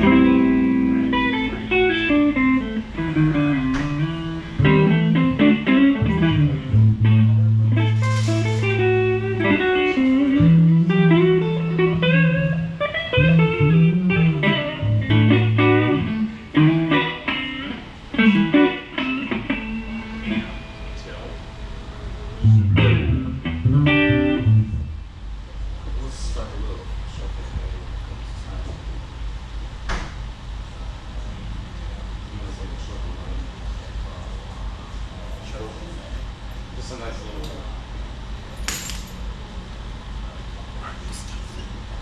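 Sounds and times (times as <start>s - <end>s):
electric guitar through amplifier: 0.0s - 25.2s.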